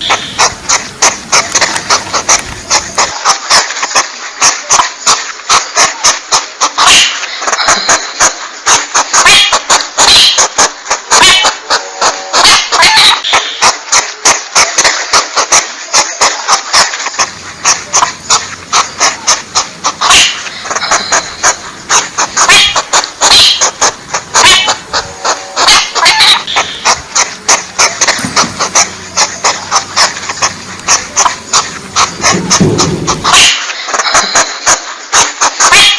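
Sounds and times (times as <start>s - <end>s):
porcupine calls: 0.0s - 3.2s, 9.2s - 11.8s, 12.4s - 13.7s, 17.2s - 34.7s
low hum: 26.4s - 33.4s.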